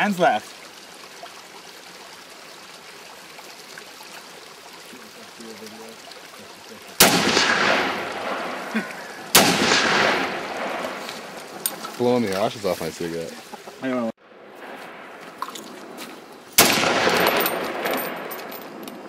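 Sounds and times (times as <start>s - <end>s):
rifle shots: 7.0s - 8.6s, 9.3s - 10.9s, 16.6s - 18.5s
rolling gunshot echo: 7.0s - 8.6s, 9.3s - 10.9s, 16.6s - 18.3s.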